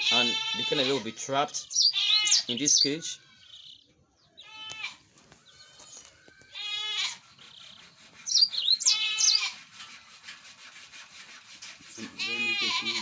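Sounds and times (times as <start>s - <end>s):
goat bleating: 0.0s - 3.4s, 4.4s - 5.0s, 5.6s - 7.3s, 8.8s - 9.6s, 12.0s - 13.0s
canaries chirping: 0.0s - 13.0s.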